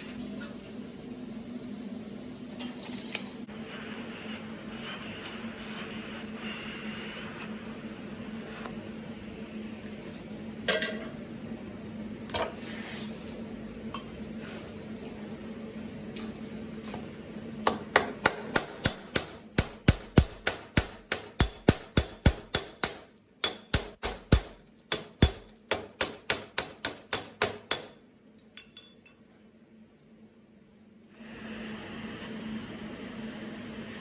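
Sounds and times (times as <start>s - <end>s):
hammer striking sheet steel: 17.7s - 28.0s.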